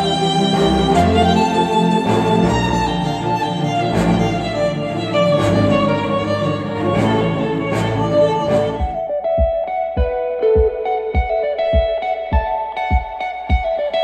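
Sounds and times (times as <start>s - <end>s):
orchestral strings: 0.0s - 9.3s
sharp drum hits: 8.8s - 13.8s.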